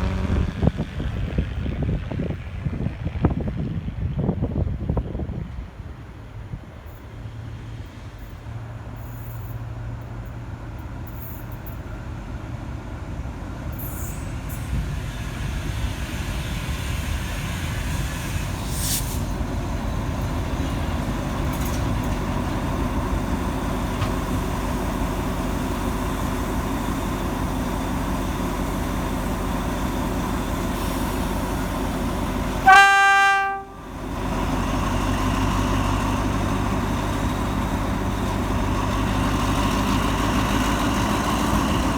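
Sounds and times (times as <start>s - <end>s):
locomotive horn blast: 0.0s - 1.0s, 32.6s - 34.0s
diesel locomotive rumble: 0.0s - 41.9s.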